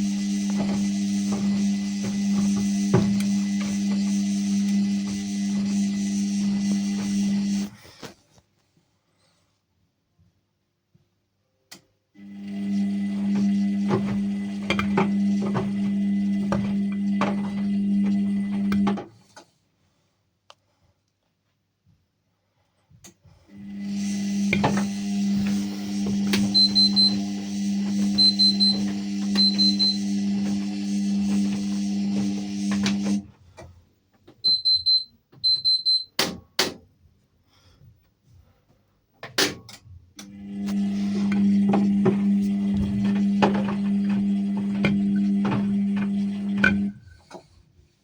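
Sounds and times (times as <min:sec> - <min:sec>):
washing machine humming: 0:00.0 - 0:07.8, 0:12.2 - 0:19.1, 0:23.5 - 0:33.8, 0:40.0 - 0:47.3.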